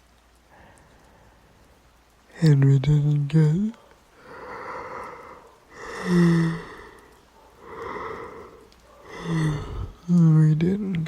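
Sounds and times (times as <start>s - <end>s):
woman breathing slowly: 0.4s - 1.8s, 4.1s - 10.1s
woman sighing: 4.3s - 7.1s.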